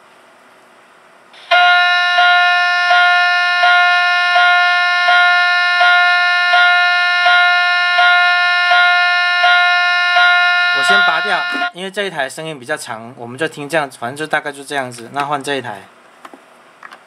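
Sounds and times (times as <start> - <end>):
electronic alarm pulsing tone: 1.4 - 11.7.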